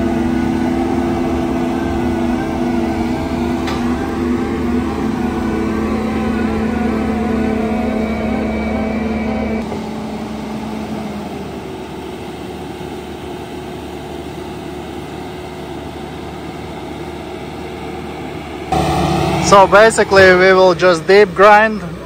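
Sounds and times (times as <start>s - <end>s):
engine running hard: 0.0s - 22.0s
rotor grinding grass and soil: 13.5s - 22.0s.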